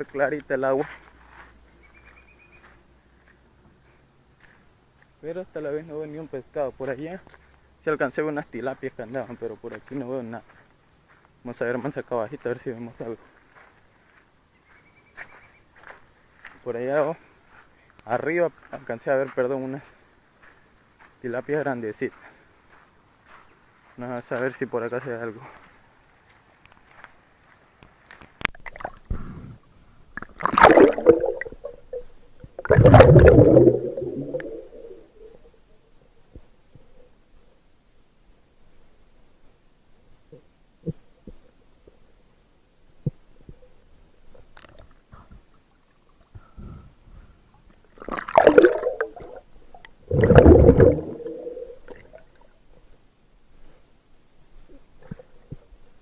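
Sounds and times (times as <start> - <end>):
water gurgling and bubbling: 30.2 - 35.4, 48.0 - 52.3.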